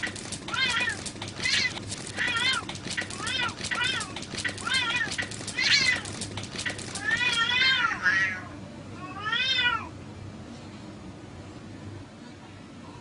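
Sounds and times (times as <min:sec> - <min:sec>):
cats yowling in a fight: 0:00.5 - 0:06.2, 0:06.9 - 0:09.9.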